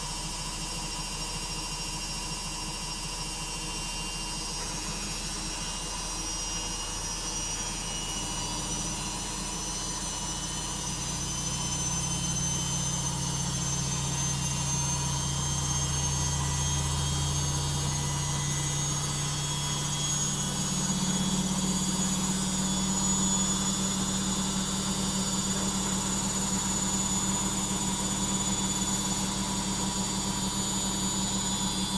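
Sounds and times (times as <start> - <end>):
high motor whine: 4.6 - 31.9
washing machine drum spinning: 7.0 - 31.9.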